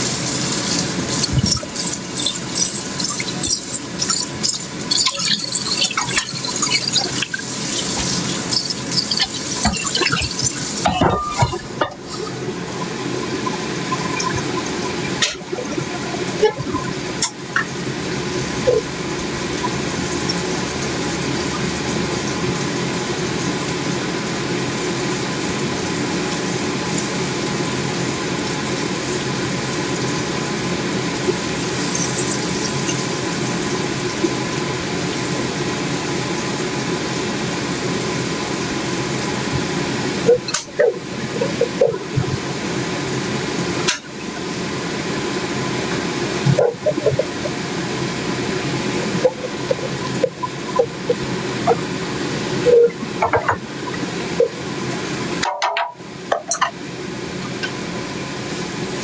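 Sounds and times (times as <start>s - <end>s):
dishes clicking and knocking: 8.0s - 12.2s, 55.4s - 56.8s.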